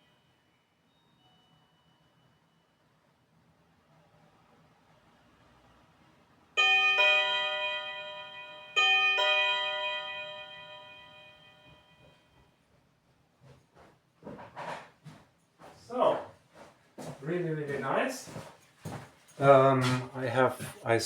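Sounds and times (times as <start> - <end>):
doorbell ding-dong chime: 6.6 - 12.4.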